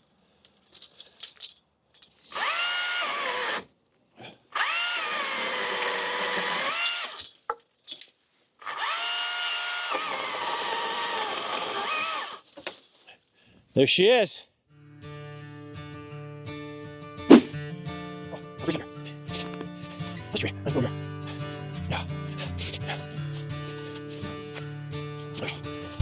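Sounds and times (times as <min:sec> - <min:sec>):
electric saw whining: 0:02.3 - 0:03.6, 0:04.6 - 0:07.2, 0:08.6 - 0:12.4.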